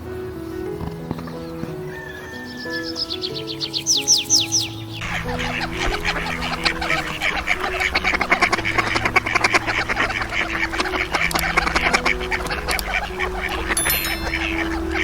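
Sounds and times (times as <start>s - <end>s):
ducks quacking: 5.0s - 15.0s.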